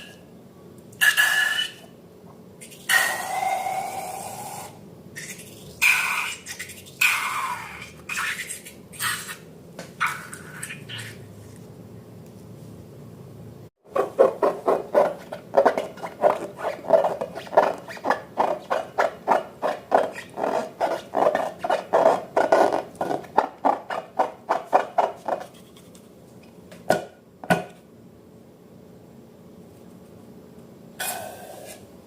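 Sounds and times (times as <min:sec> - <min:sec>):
slime being mixed wet strokes: 0:14.0 - 0:25.9.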